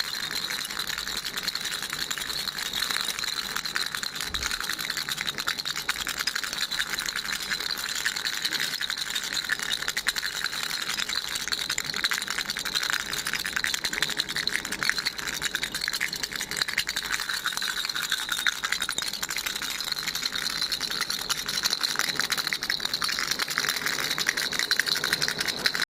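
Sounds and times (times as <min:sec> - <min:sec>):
baby rattle shaking: 0:00.0 - 0:25.9.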